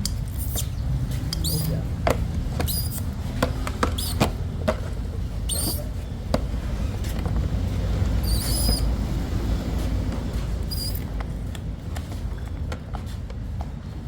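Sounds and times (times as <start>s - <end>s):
steady low rumble: 0.0s - 14.0s
short high squeaks: 0.3s - 0.8s, 1.4s - 1.8s, 2.6s - 3.1s, 4.0s - 4.3s, 5.5s - 6.1s, 8.2s - 8.9s, 10.7s - 11.1s.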